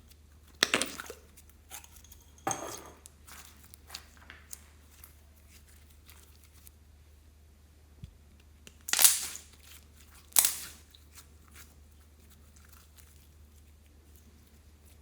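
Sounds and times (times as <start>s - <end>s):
slime popping: 8.9s - 9.4s, 10.3s - 10.8s.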